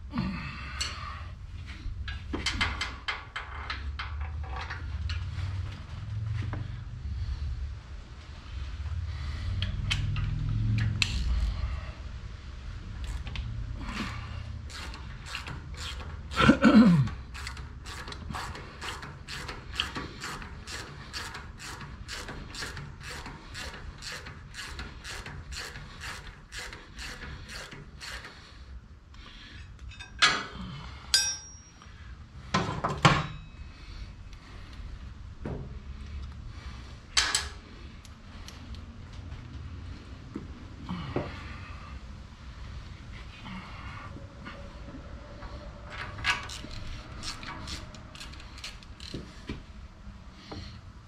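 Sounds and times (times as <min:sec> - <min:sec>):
ratchet wrench clicking: 0:10.8 - 0:11.5, 0:14.6 - 0:16.4, 0:17.3 - 0:28.4, 0:46.2 - 0:49.2.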